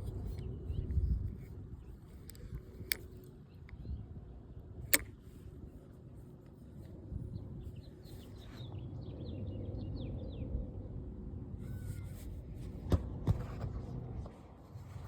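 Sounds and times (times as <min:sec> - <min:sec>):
sharp click: 0:04.9 - 0:05.2.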